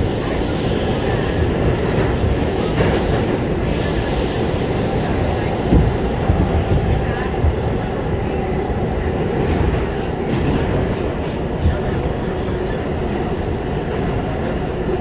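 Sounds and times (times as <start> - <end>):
subway wheels rumbling on rail: 0.0 - 15.0.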